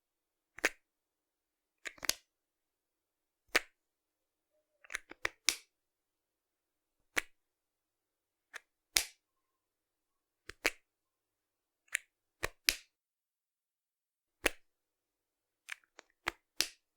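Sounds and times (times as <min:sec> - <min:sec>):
marker cap clicking on and off: 0:00.6 - 0:00.8, 0:01.8 - 0:02.3, 0:03.5 - 0:03.8, 0:04.8 - 0:05.7, 0:07.1 - 0:07.4, 0:08.5 - 0:09.2, 0:10.4 - 0:10.9, 0:11.9 - 0:13.0, 0:14.4 - 0:14.7, 0:15.6 - 0:16.8.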